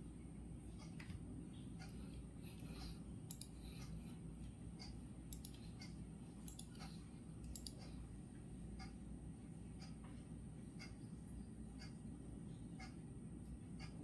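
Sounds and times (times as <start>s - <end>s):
faint clock ticking: 0.6s - 14.0s
light clicks: 2.8s - 4.0s, 4.8s - 7.9s.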